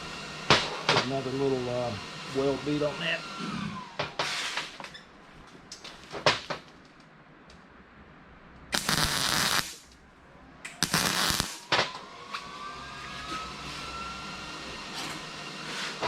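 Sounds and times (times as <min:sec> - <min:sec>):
faint rising whine: 0:07.8 - 0:16.0
welding arc crackling: 0:08.7 - 0:10.0, 0:10.7 - 0:11.8.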